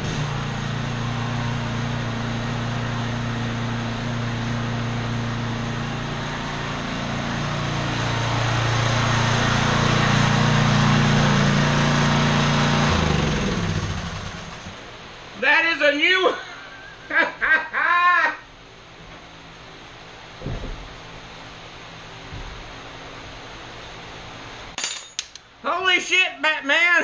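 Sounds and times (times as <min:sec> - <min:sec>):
small engine running: 0:00.0 - 0:14.9.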